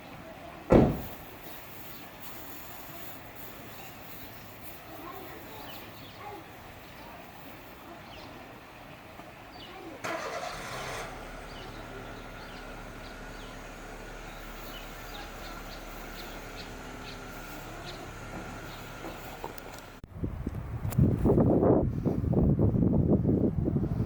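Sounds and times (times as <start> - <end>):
engine starting and humming: 10.0 - 20.0.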